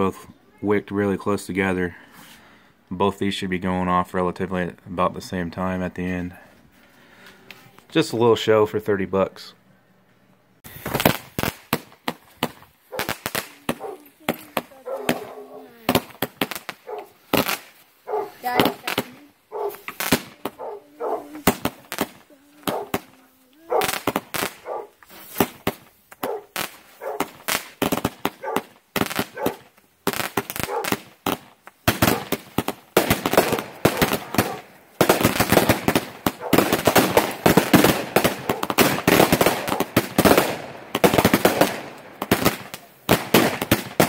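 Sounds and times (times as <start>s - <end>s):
fireworks popping and crackling: 10.6s - 44.0s.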